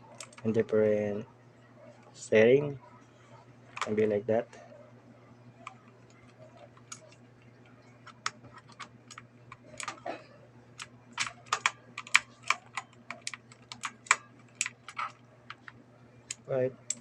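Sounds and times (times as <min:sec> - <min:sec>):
keyboard keys clacking: 0:10.8 - 0:15.7.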